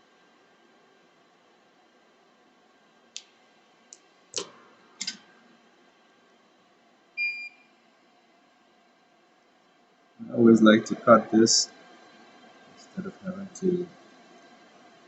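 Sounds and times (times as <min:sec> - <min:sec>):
small sharp clicks and taps: 0:03.1 - 0:05.3.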